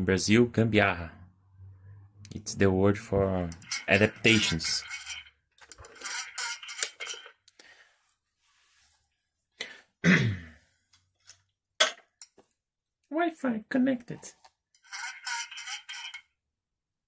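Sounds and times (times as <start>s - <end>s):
man clearing his throat: 10.0s - 10.6s.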